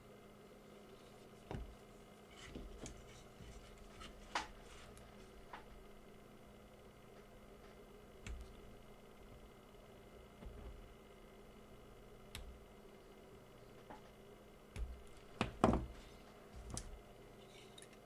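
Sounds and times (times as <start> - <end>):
tools knocking on workbench: 15.4 - 16.0.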